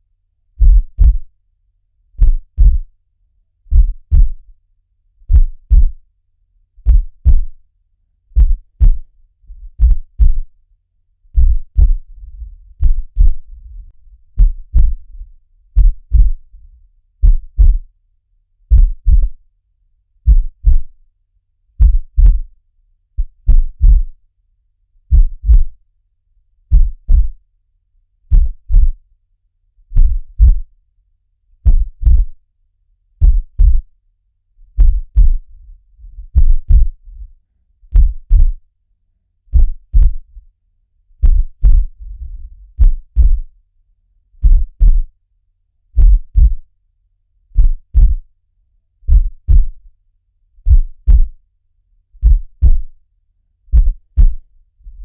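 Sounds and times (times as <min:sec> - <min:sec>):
heartbeat thumps: 0:00.6 - 0:01.3, 0:02.2 - 0:02.9, 0:03.7 - 0:04.5, 0:05.3 - 0:06.0, 0:06.8 - 0:07.6, 0:08.4 - 0:10.6, 0:11.3 - 0:16.6, 0:17.2 - 0:17.9, 0:18.7 - 0:19.4, 0:20.2 - 0:21.0, 0:21.8 - 0:22.5, 0:23.2 - 0:24.2, 0:25.1 - 0:25.8, 0:26.7 - 0:27.4, 0:28.3 - 0:29.0, 0:29.9 - 0:30.7, 0:31.6 - 0:32.4, 0:33.2 - 0:33.9, 0:34.7 - 0:37.3, 0:37.9 - 0:38.6, 0:39.5 - 0:40.4, 0:41.2 - 0:43.5, 0:44.4 - 0:45.1, 0:46.0 - 0:46.7, 0:47.6 - 0:48.3, 0:49.1 - 0:49.9, 0:50.6 - 0:51.4, 0:52.2 - 0:53.0, 0:53.7 - 0:55.0.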